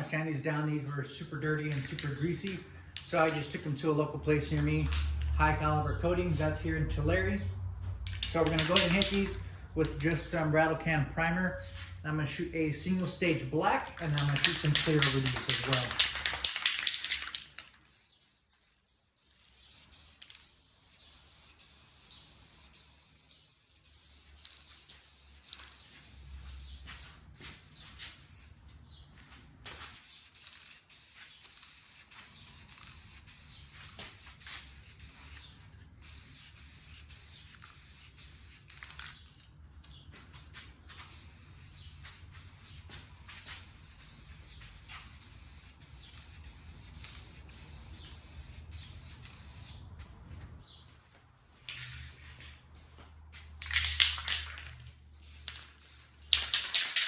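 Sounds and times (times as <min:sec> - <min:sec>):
aerosol can spraying: 0:08.1 - 0:10.1, 0:13.2 - 0:28.5, 0:29.8 - 0:39.2, 0:41.0 - 0:49.8, 0:54.2 - 0:57.0.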